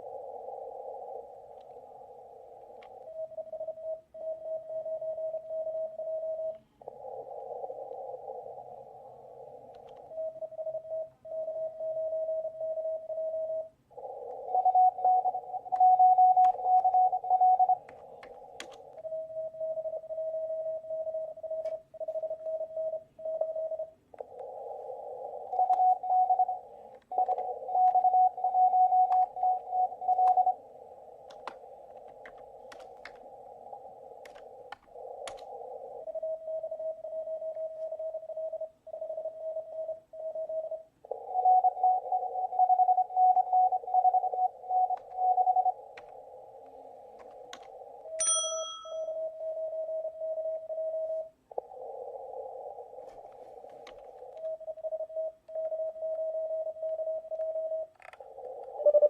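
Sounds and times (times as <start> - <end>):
radio hiss: 6.6 - 10.3, 24.2 - 38.0, 51.4 - 59.0
morse code beeping tones: 14.4 - 24.0, 24.8 - 33.2, 36.1 - 46.1, 48.1 - 51.4.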